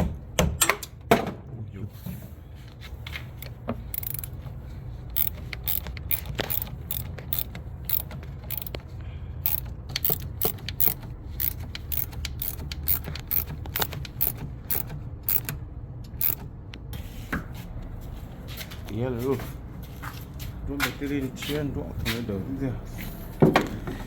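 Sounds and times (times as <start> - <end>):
ratchet wrench clicking: 3.4 - 4.4, 5.1 - 8.8, 9.4 - 16.5.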